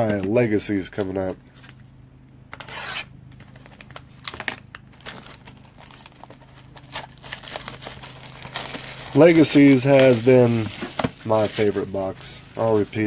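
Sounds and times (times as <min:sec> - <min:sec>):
plastic wrapping crinkling and tearing: 0:03.4 - 0:13.0.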